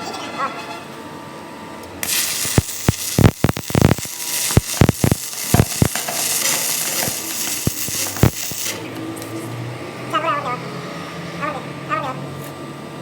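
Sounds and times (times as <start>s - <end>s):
arc welding crackle and pops: 2.0s - 9.3s.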